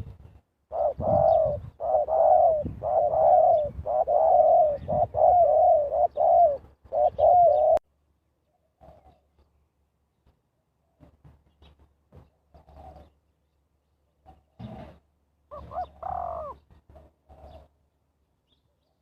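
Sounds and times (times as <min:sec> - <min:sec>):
dove cooing: 0:00.7 - 0:07.8, 0:08.7 - 0:09.3, 0:12.5 - 0:13.2, 0:14.2 - 0:17.7.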